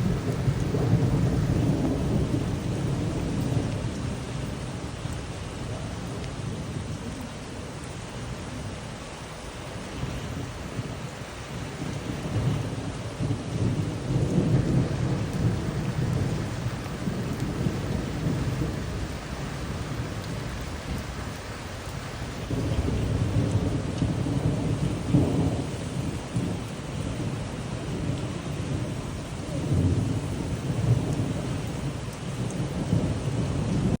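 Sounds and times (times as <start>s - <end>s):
steady rain hissing: 0.0s - 34.0s.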